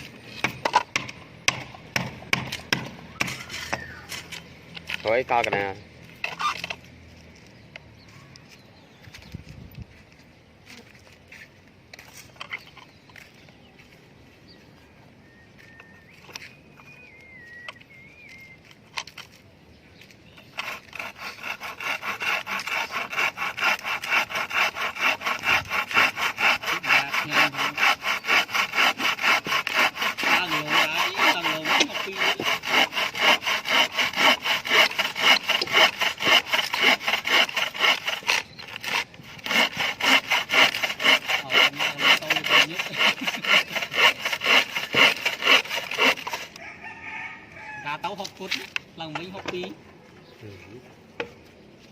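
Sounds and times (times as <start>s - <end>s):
hand saw cutting wood: 0.0s - 7.2s, 20.3s - 46.6s.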